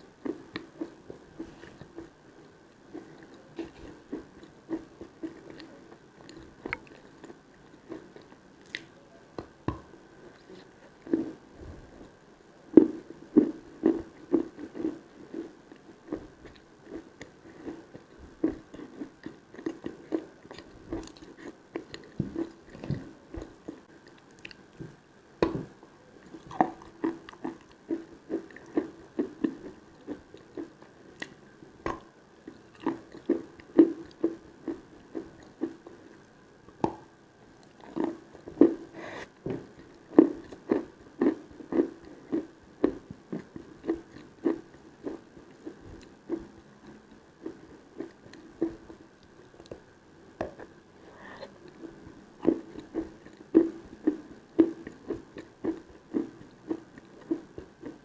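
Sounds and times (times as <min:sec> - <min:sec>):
crunchy chewing of chalk: 0:26.2 - 0:36.3, 0:37.6 - 0:49.8, 0:50.6 - 0:58.0.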